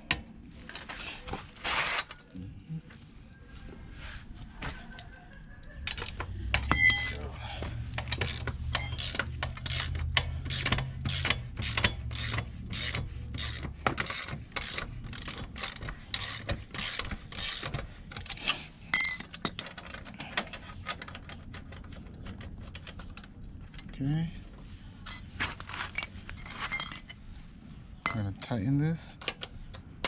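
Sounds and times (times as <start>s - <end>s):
metallic ring: 6.6s - 7.4s, 18.9s - 19.4s, 25.0s - 25.4s, 26.0s - 27.2s, 28.0s - 28.5s
ratchet wrench clicking: 8.0s - 17.8s.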